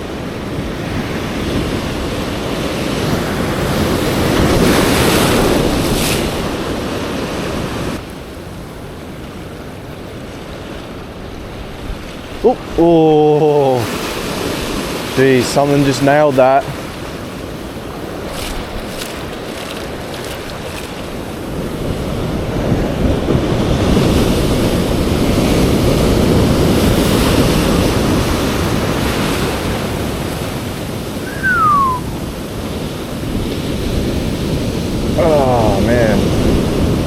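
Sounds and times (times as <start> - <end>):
wind on microphone: 0.0 - 8.0, 16.8 - 37.0
ocean swell washing over rocks: 0.0 - 37.0
short falling whistle: 31.2 - 32.2.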